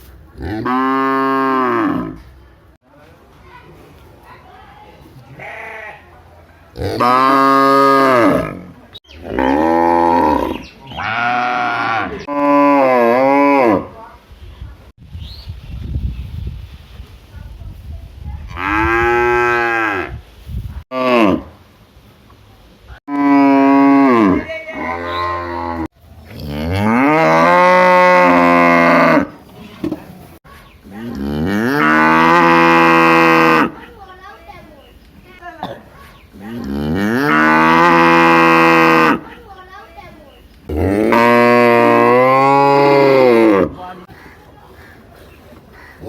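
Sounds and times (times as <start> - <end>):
cow mooing: 9.3 - 13.8, 40.7 - 43.8.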